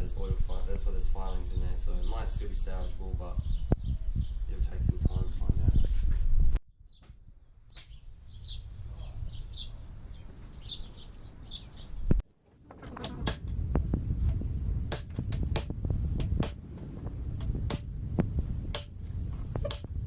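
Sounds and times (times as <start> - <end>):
birds chirping: 1.1 - 6.1, 6.8 - 20.0
low rumble: 12.8 - 20.0
tools clicking and knocking on metal: 18.7 - 19.9.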